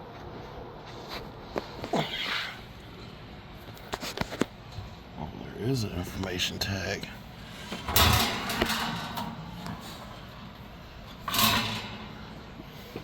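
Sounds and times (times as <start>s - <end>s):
fan handling scraping and rustling: 3.7s - 5.0s, 6.2s - 13.0s.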